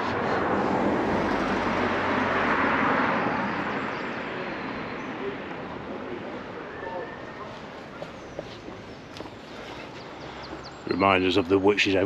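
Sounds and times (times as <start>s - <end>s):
vehicle passing by: 0.0s - 6.6s.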